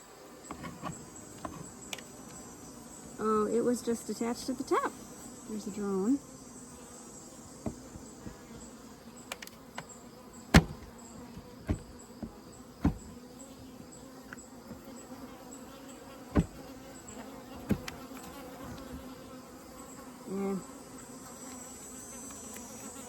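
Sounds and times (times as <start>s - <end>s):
honeybees buzzing: 0.0s - 23.0s
sharp knocks: 10.5s - 13.1s, 16.3s - 16.6s.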